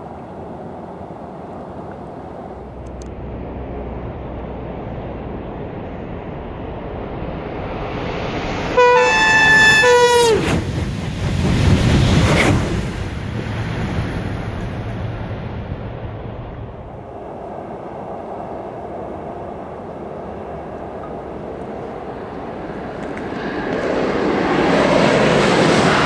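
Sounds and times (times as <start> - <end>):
train rushing by: 0.0 - 26.0
train horn: 8.7 - 10.7.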